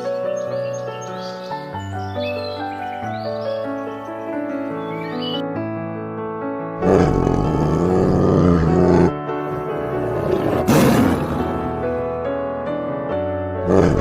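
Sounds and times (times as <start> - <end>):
background music: 0.0 - 14.0
tiger roaring: 6.8 - 12.1, 13.6 - 14.0.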